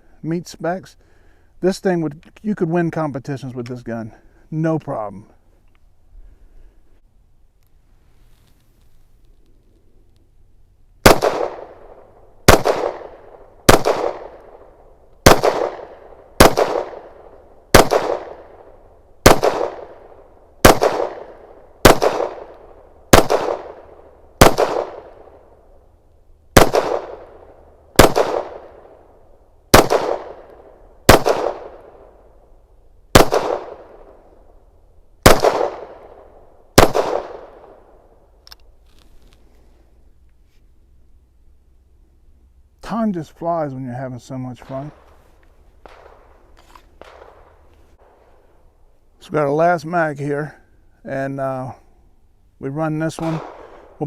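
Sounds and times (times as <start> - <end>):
pistol shots with echo: 11.0 - 25.6, 26.6 - 32.3, 33.1 - 34.3, 35.2 - 38.0, 45.8 - 46.3, 47.0 - 48.2, 53.2 - 54.0.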